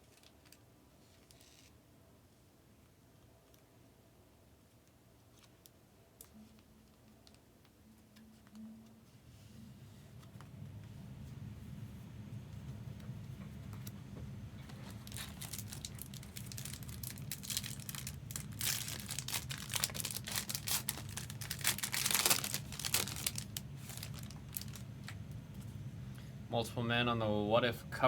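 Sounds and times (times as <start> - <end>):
steady low hum: 1.8 - 28.0
packaging crinkling and tearing: 14.7 - 25.2.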